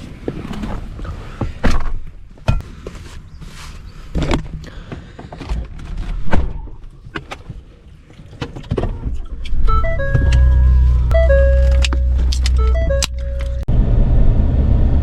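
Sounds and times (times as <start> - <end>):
chime-like tones: 9.7 - 13.7.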